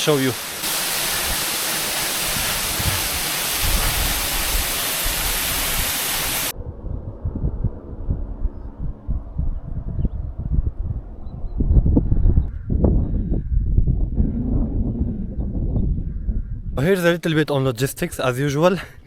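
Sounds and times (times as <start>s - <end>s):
waterfall rushing: 0.0s - 6.5s
wind buffeting microphone: 0.7s - 16.8s.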